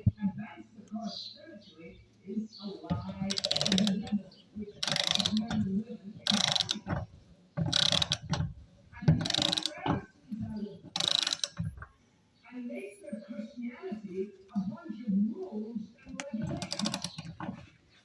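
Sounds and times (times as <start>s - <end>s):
torque wrench ratcheting: 3.0s - 4.2s, 4.8s - 10.0s, 10.6s - 11.9s, 16.4s - 17.5s.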